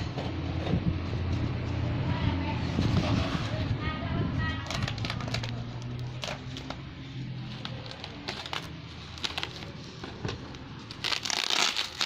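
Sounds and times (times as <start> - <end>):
cardboard parcel clicks and rustles: 4.6 - 6.8, 7.4 - 12.0.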